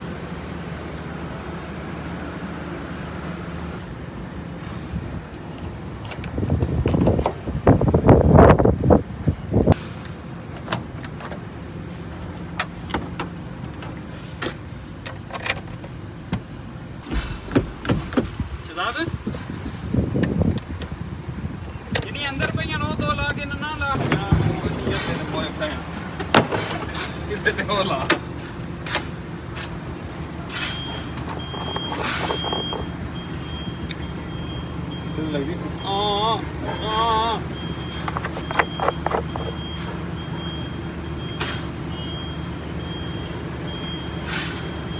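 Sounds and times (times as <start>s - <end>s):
sharp clicks and knocks: 12.6s - 18.7s, 38.0s - 39.7s.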